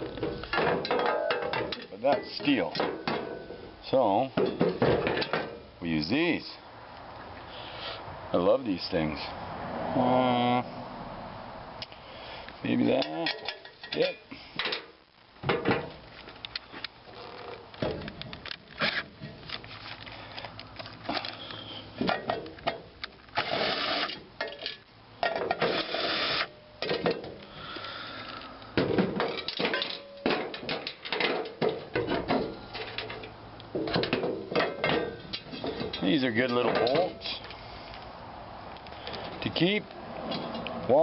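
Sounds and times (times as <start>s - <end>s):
metal parts and tools clinking: 0.2s - 3.6s, 12.8s - 14.9s, 17.2s - 27.4s, 29.0s - 37.5s.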